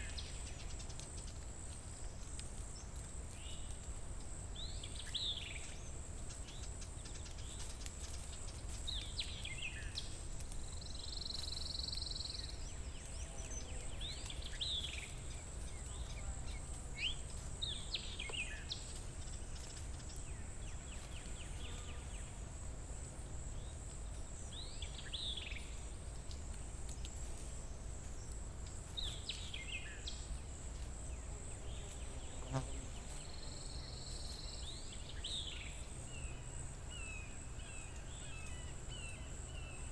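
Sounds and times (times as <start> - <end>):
birds chirping: 2.7 - 22.4.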